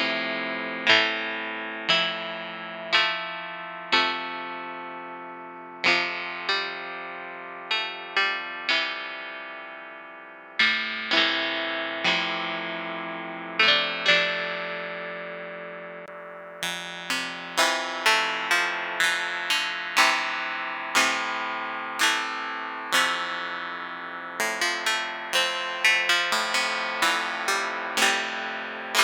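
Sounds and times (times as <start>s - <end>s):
plucked synthesizer notes: 16.1s - 29.0s.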